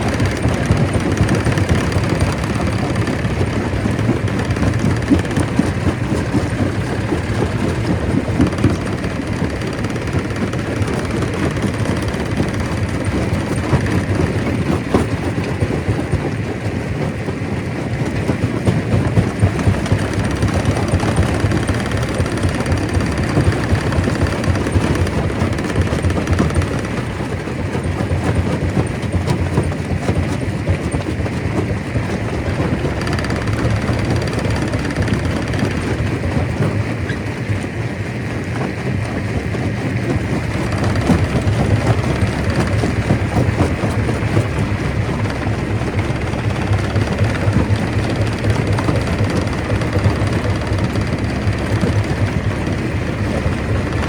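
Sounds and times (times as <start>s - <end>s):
stone crusher rumbling: 0.0s - 16.4s, 18.1s - 30.2s, 39.9s - 54.0s
rock rattling and knocking: 0.0s - 37.7s, 39.4s - 54.0s.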